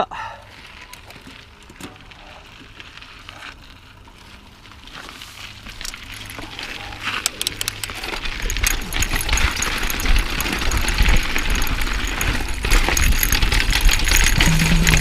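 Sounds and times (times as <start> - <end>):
bike rattling and clicking: 0.4 - 15.0
bike tyres rumbling over rock: 7.9 - 15.0.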